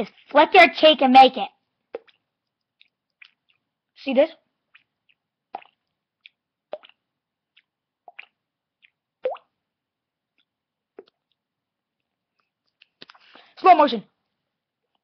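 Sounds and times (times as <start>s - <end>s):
mouth-made water droplet plops: 2.0s - 2.2s, 5.5s - 7.0s, 8.0s - 9.6s, 11.0s - 11.2s.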